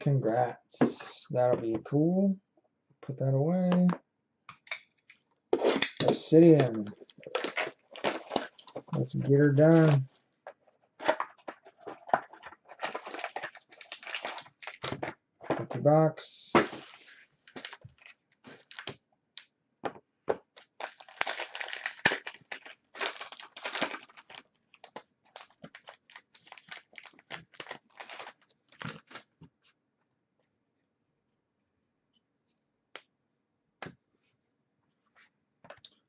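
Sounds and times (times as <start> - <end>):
card wrappers crinkling and tearing: 5.6 - 10.1, 11.0 - 15.2, 16.6 - 19.0, 20.5 - 29.3.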